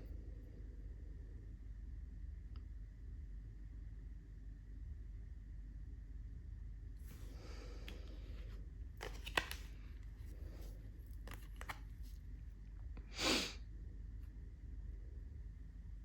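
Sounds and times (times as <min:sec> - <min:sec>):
cards clicking and rustling: 0:07.8 - 0:12.2.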